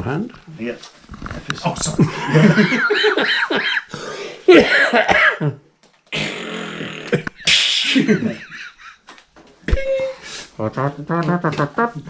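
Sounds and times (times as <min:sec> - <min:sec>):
man coughing: 0:04.5 - 0:05.6, 0:07.2 - 0:08.8
man clearing his throat: 0:04.5 - 0:08.4.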